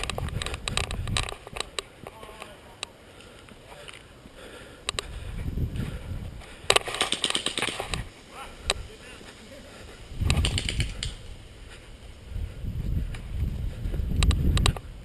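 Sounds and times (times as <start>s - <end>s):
airsoft gun firing: 6.8s - 8.0s, 10.3s - 11.2s.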